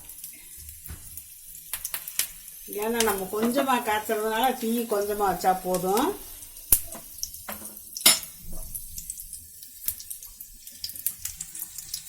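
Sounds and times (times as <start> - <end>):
oil sizzling in a ladle: 0.0 - 12.0.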